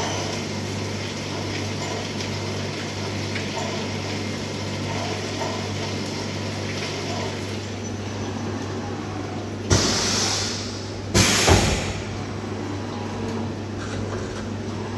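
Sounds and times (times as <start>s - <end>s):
milling machine humming: 0.0s - 14.9s
machine hiss: 9.7s - 12.1s.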